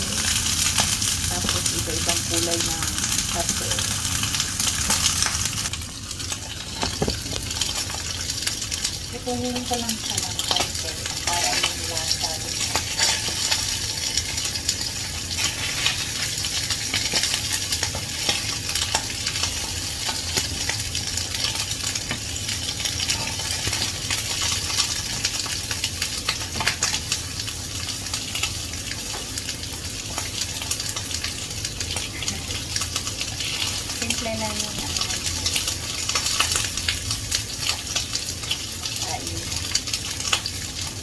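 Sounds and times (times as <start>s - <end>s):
vegetables sizzling in oil: 0.0s - 41.0s
spatula scraping pan: 12.6s - 14.4s.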